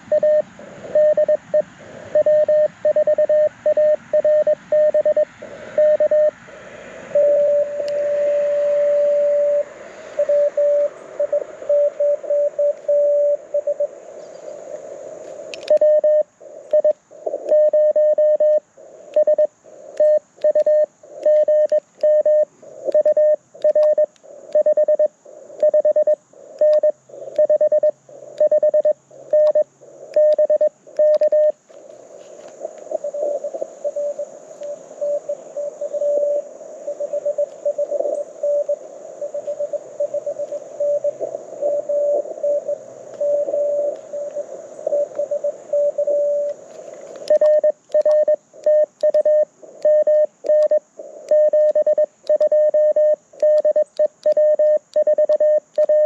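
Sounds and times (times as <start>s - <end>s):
morse code tones: 0.0s - 6.4s, 7.1s - 13.9s, 15.6s - 31.6s, 32.9s - 46.6s, 47.3s - 56.0s
radio band hiss: 0.0s - 52.2s
click: 15.2s - 15.9s, 20.0s - 22.2s, 29.4s - 30.4s, 31.0s - 31.4s, 46.4s - 52.6s, 53.4s - 55.9s.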